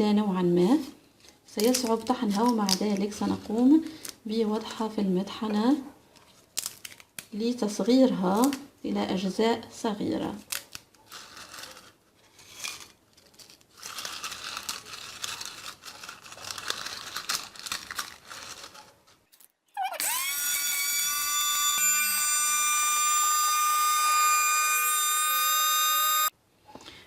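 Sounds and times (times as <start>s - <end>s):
dry leaves rustling and crinkling: 10.5s - 18.9s
electric grinder motor whining: 20.0s - 26.3s.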